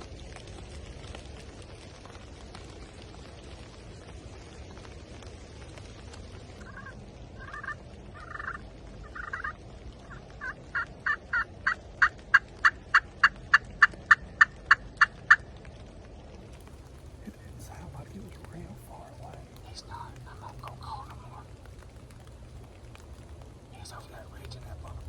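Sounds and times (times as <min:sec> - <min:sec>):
wind and rain hiss: 0:00.0 - 0:25.0
turkey yelping: 0:06.7 - 0:15.4.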